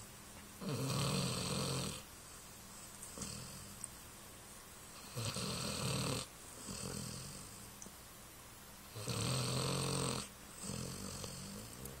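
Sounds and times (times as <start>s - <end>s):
snoring: 0.6s - 2.0s, 3.2s - 3.8s, 5.0s - 7.6s, 8.9s - 12.0s.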